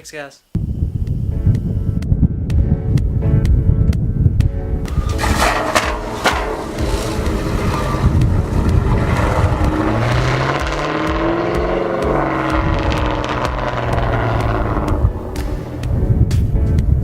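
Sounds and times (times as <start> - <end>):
car engine revving: 4.9 - 16.5.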